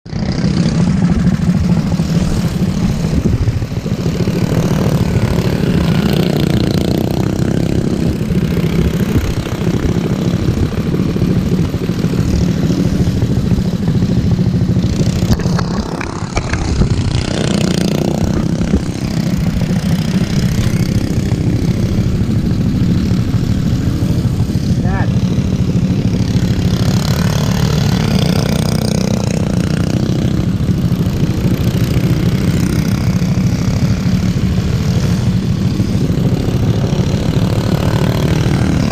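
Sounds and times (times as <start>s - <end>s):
lawn mower engines running: 0.1s - 38.9s.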